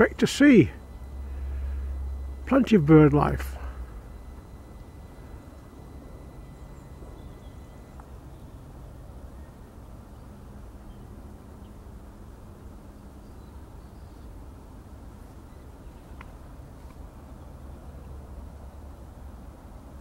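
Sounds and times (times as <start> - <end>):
faint high chirps: 0.0 - 11.8
thin high whine: 0.0 - 19.9
vehicle rumble on a path: 0.0 - 20.0.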